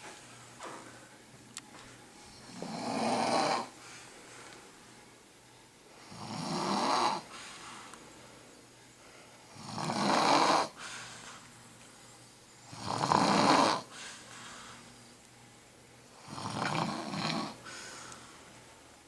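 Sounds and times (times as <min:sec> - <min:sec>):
woman snoring: 0:02.3 - 0:03.8, 0:06.0 - 0:07.3, 0:09.5 - 0:10.8, 0:12.7 - 0:13.9, 0:16.2 - 0:17.7.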